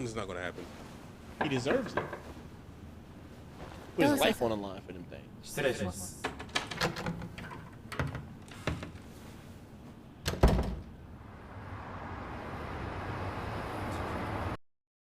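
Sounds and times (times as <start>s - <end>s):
door shutting thud: 10.2s - 11.0s.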